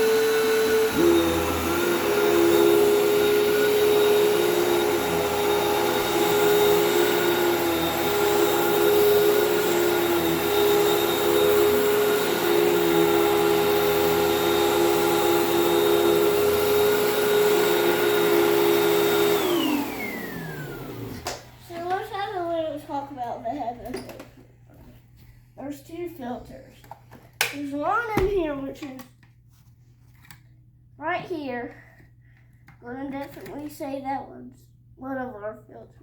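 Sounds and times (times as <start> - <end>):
vacuum motor spinning down: 0.0 - 21.6
vacuum cleaner motor whine: 0.0 - 22.2.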